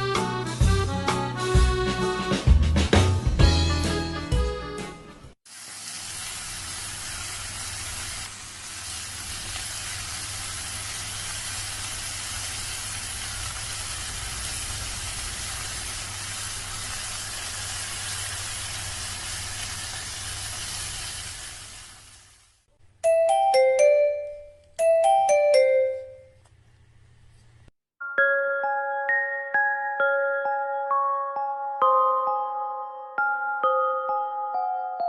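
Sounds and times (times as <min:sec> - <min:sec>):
music: 0:00.0 - 0:05.4, 0:23.0 - 0:26.2, 0:28.0 - 0:35.0.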